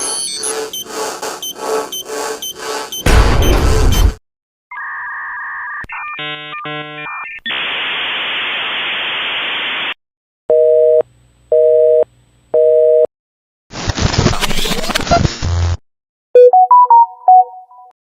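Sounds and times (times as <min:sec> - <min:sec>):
two-note telephone tone: 0:10.5 - 0:13.1
busy-signal beeps: 0:16.4 - 0:17.9.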